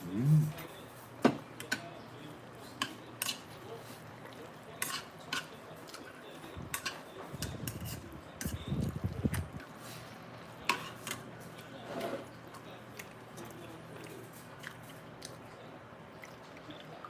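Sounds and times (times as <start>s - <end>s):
utensils clinking against dishes: 0.0s - 2.0s, 2.6s - 4.0s, 4.7s - 8.7s, 10.6s - 12.3s.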